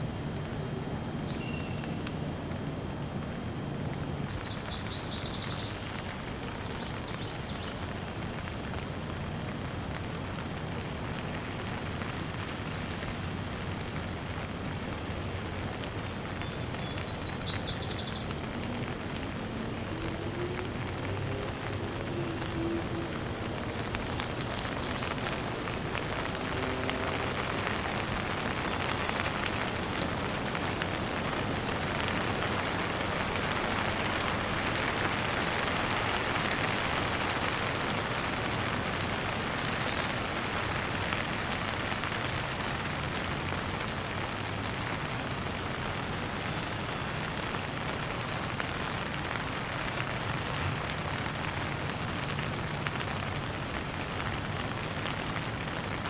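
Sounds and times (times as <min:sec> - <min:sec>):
steady rain on a surface: 0:00.0 - 0:56.0.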